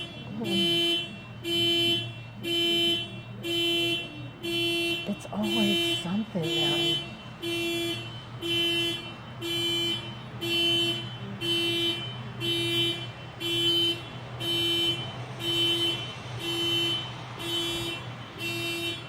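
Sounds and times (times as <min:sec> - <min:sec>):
car alarm horn honking: 0:00.0 - 0:19.0.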